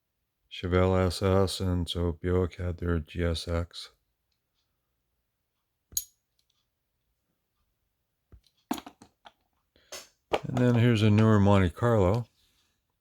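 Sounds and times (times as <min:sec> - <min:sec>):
sharp metallic clink: 0:06.0 - 0:06.2.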